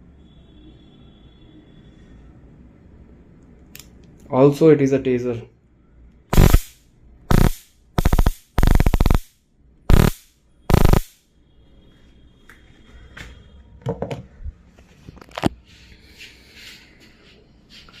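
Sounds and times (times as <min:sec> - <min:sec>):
stun gun crackling zaps: 0:06.3 - 0:09.3, 0:09.9 - 0:11.2.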